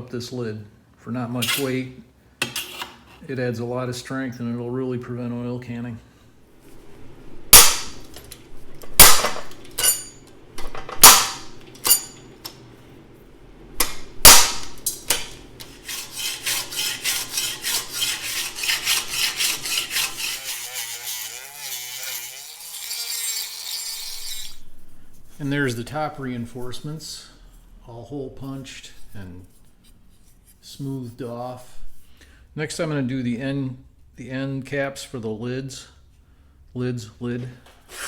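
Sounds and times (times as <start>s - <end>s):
hole punch snapping through steel: 9.0s - 10.0s, 11.0s - 12.6s, 13.8s - 15.4s.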